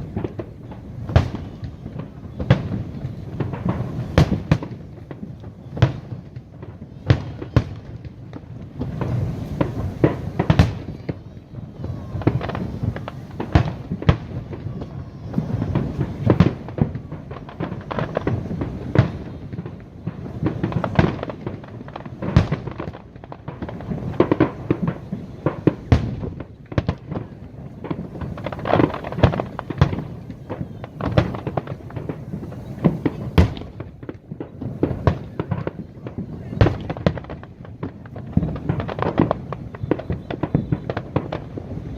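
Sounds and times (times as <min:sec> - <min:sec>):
fireworks booming: 0:00.0 - 0:41.9.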